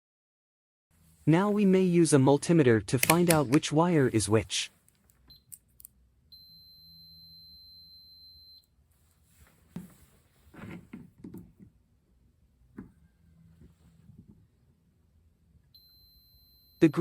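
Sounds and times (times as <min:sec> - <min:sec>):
test probes clicking and tapping: 0:03.0 - 0:03.6
multimeter continuity beep: 0:06.3 - 0:08.7, 0:15.7 - 0:17.0.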